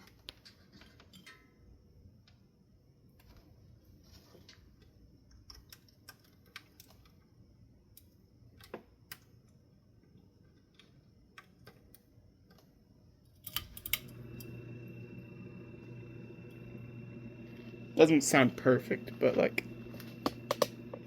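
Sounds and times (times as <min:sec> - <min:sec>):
fan motor humming: 0:13.5 - 0:21.0
ceiling fan switch clicks: 0:20.2 - 0:21.0.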